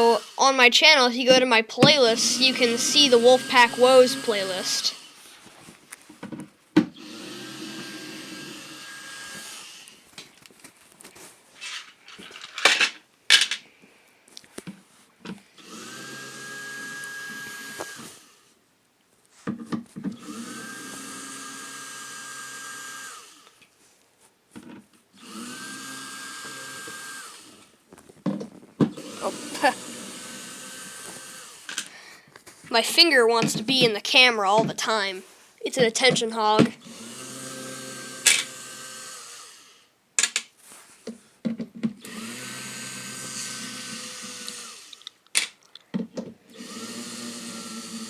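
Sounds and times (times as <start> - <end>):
power drill motor whine: 0.0 - 0.4, 1.8 - 5.3, 6.9 - 10.0, 15.6 - 18.5, 20.1 - 23.6, 25.2 - 27.8, 28.8 - 31.9, 36.7 - 39.9, 42.0 - 45.1, 46.5 - 48.0.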